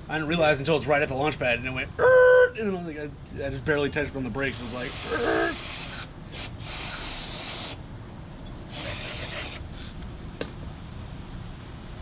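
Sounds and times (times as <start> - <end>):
spray hissing: 4.4 - 7.8, 8.7 - 9.8.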